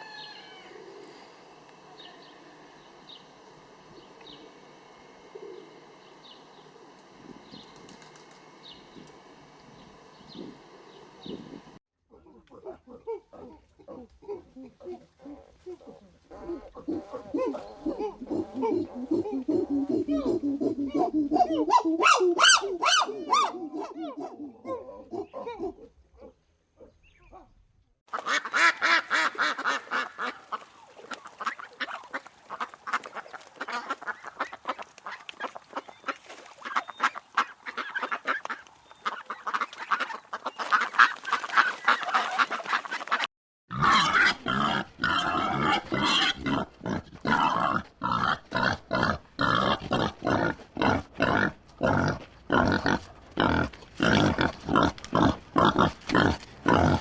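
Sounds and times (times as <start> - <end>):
geese honking: 28.1 - 44.4
rapid repeated animal calls: 28.1 - 50.5
ducks quacking: 28.1 - 51.5.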